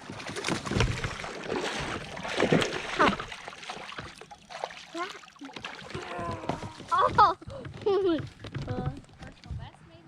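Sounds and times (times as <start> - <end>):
fish thrashing in water: 0.0 - 7.3.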